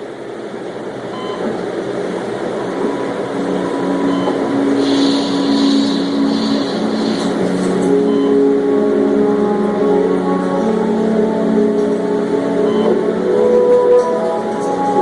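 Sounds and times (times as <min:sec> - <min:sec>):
low musical drone: 0:01.8 - 0:15.0
hiss: 0:04.5 - 0:08.0.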